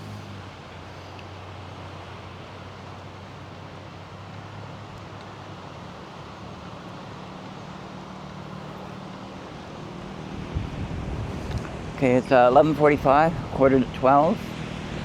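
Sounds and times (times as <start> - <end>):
vehicle engine humming: 0.0 - 15.0
wind and road noise: 0.0 - 15.0
low bumps: 8.2 - 15.0.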